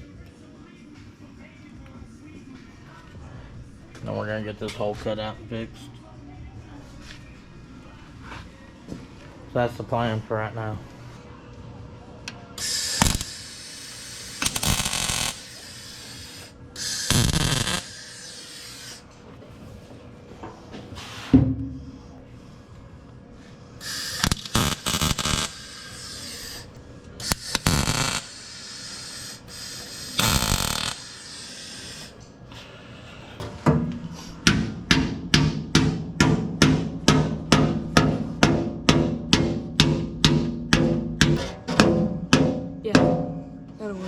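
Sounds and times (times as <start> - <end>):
short hissing bursts: 12.6 - 19.1, 23.8 - 32.2.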